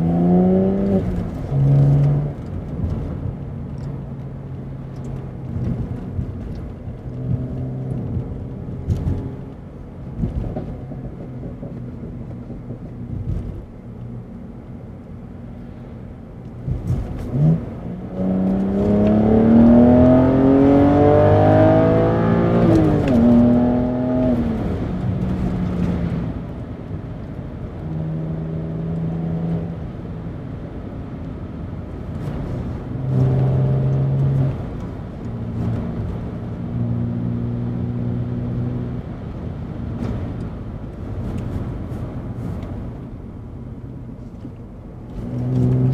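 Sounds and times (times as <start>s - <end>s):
car engine revving: 0.0s - 13.8s, 16.6s - 26.7s, 31.9s - 43.4s, 45.0s - 45.9s.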